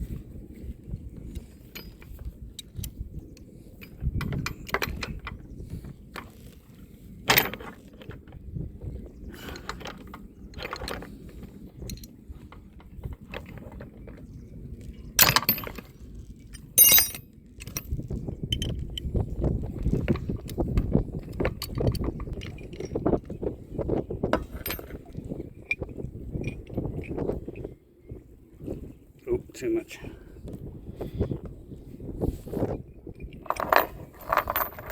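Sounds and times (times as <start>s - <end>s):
anchor chain clinking: 1.4s - 2.8s, 7.3s - 8.0s, 15.2s - 15.9s, 16.5s - 18.8s, 24.4s - 27.6s, 33.2s - 34.9s.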